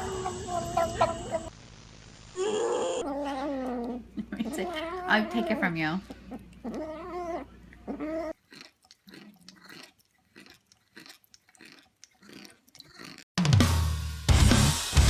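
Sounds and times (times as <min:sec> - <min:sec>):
cat yowling: 0:02.4 - 0:04.0
cat chewing dry food: 0:08.5 - 0:13.2
loud music: 0:13.4 - 0:15.0.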